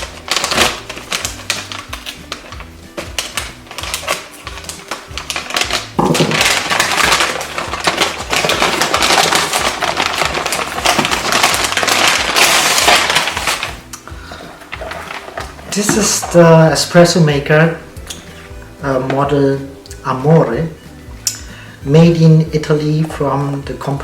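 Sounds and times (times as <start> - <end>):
packaging crinkling: 0.0 - 16.9
background music: 0.0 - 24.0.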